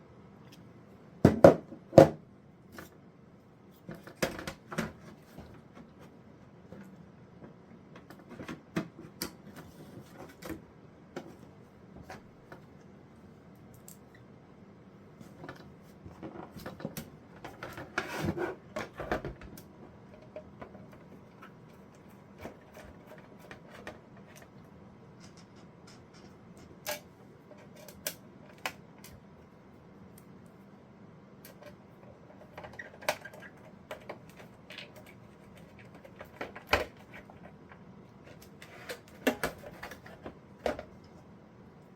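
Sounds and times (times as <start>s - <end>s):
low steady hum: 0.0s - 41.9s
hardware clicks taps and scrapes: 3.7s - 12.9s, 15.2s - 29.2s, 31.4s - 41.2s.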